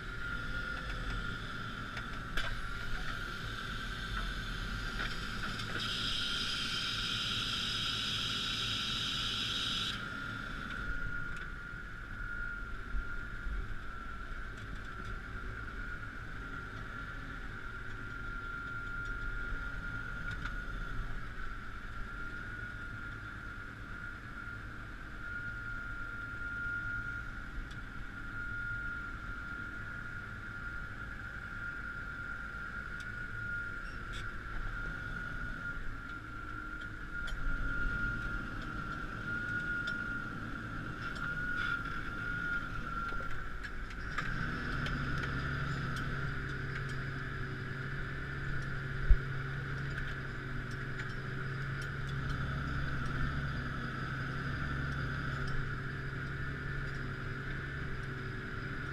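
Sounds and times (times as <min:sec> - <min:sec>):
tractor engine rumble: 0:00.0 - 0:25.2, 0:29.1 - 0:58.9
high whine: 0:00.0 - 0:58.9
hiss: 0:02.8 - 0:10.6.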